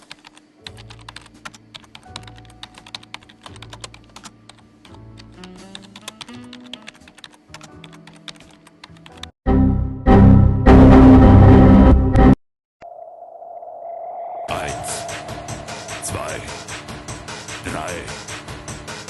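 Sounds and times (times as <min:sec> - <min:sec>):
typing on computer keyboard: 0:00.0 - 0:04.6, 0:05.2 - 0:09.3
quiet background music: 0:00.0 - 0:09.3, 0:14.5 - 0:19.0
loud music: 0:14.5 - 0:19.0.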